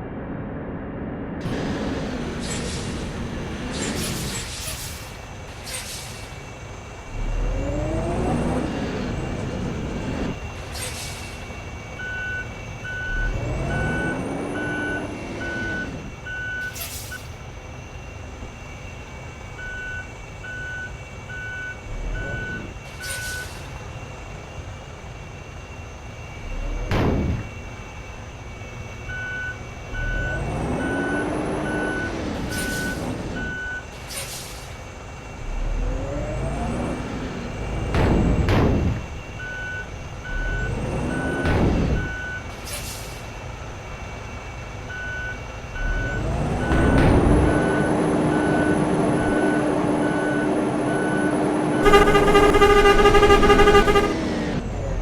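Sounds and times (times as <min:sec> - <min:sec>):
bus engine revving: 0:00.0 - 0:05.2, 0:06.4 - 0:17.2, 0:29.6 - 0:33.8, 0:35.2 - 0:42.6, 0:45.5 - 0:55.0
air brake hisses: 0:03.7 - 0:06.4, 0:16.6 - 0:17.3, 0:33.9 - 0:35.0, 0:42.5 - 0:43.4
reversing alarm beeping: 0:11.2 - 0:23.9, 0:24.5 - 0:33.9, 0:39.0 - 0:42.5, 0:44.0 - 0:54.8.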